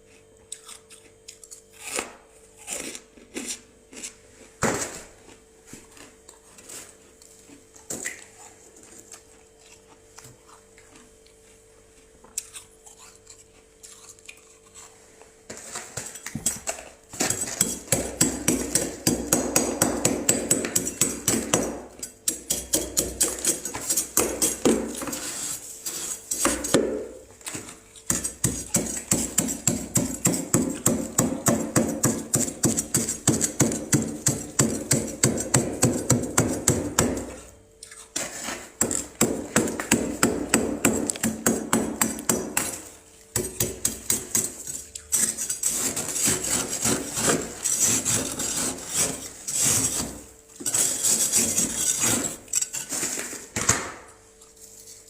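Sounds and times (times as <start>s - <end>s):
frost being scraped: 23.2s - 26.8s, 38.1s - 38.8s, 44.5s - 53.5s.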